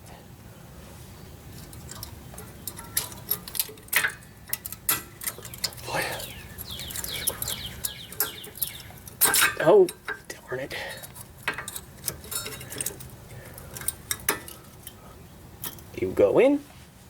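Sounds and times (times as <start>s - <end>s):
metallic scraping: 1.5s - 16.0s
metal brake clips clicking: 1.6s - 10.4s, 11.0s - 15.0s.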